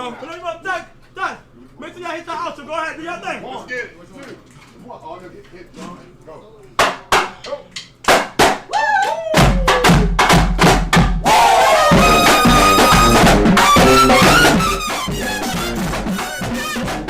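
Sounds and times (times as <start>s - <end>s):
drum hits: 6.8s - 8.7s, 9.4s - 17.0s
beat with heavy bass: 9.2s - 17.0s.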